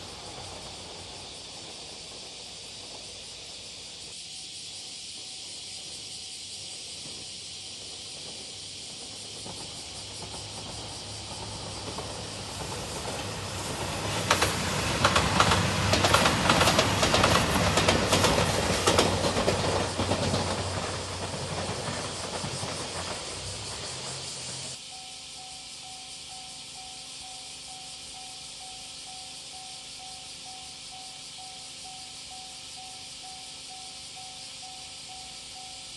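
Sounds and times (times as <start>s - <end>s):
diesel train passing: 0.0s - 35.9s
wheels clattering over rail joints: 7.0s - 24.8s.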